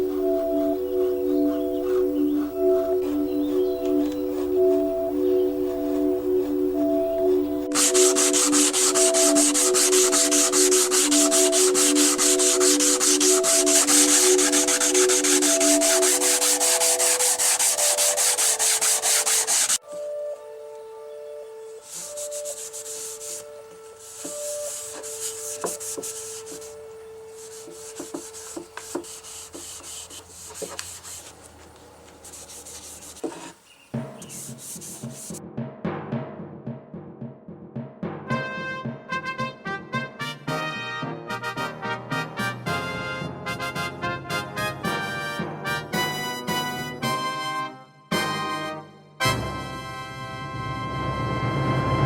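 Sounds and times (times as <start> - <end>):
soft background music: 0.0 - 37.3
sandpaper rubbing wood: 7.7 - 19.8, 21.8 - 26.8, 27.4 - 33.6, 34.2 - 35.4.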